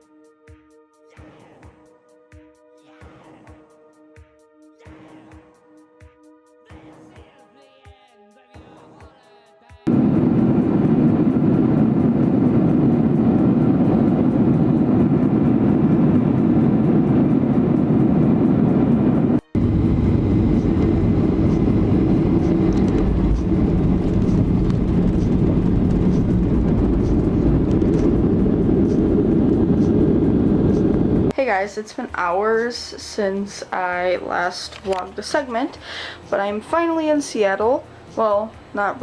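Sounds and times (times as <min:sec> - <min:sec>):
airliner cabin engine rumble: 0:09.9 - 0:31.3.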